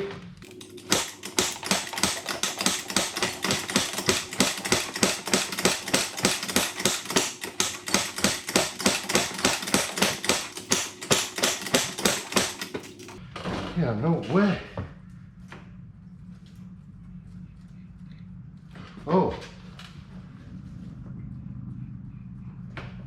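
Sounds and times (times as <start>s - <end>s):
electric starter clicking: 0.4s - 13.2s.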